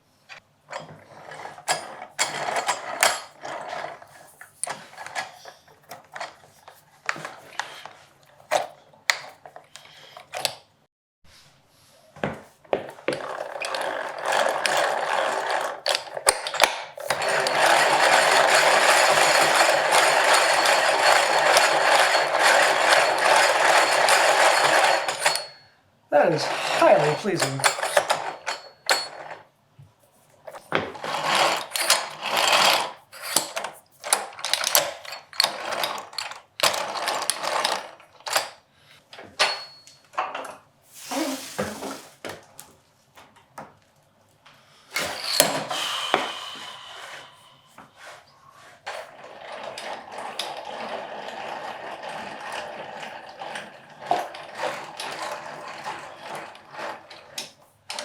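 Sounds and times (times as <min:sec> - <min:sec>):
vise mechanism clicking and ratcheting: 0:13.2 - 0:25.6.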